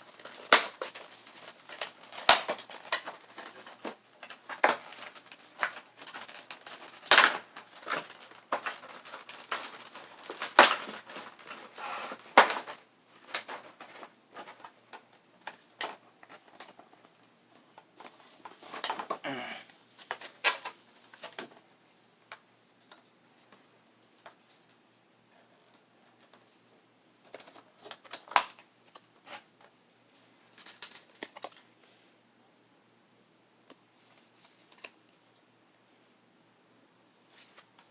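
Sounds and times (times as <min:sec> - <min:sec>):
packaging rustle: 0:00.0 - 0:19.2, 0:30.5 - 0:31.7.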